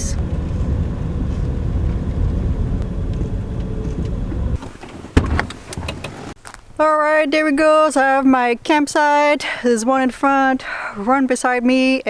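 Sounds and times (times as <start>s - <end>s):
van engine and road rumble: 0.0s - 6.4s.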